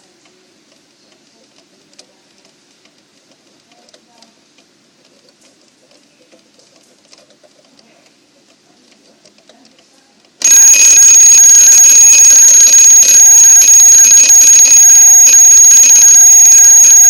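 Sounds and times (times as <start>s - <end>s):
alarm clock ticking faintly: 10.4s - 17.0s.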